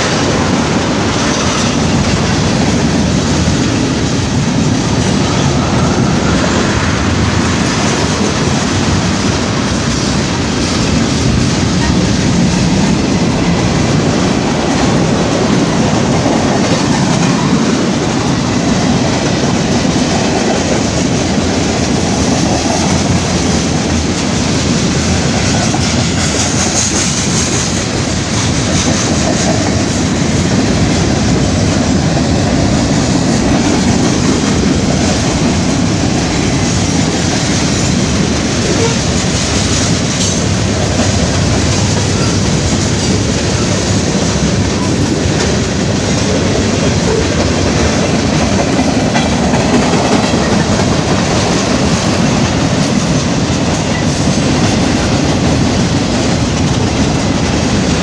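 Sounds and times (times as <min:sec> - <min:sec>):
train wheels on rails: 0:00.0 - 0:58.0.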